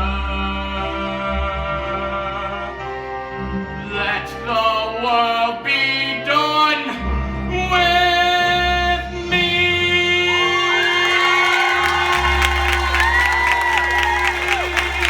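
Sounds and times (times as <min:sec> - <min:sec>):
young man singing with vibrato: 0:03.8 - 0:12.4.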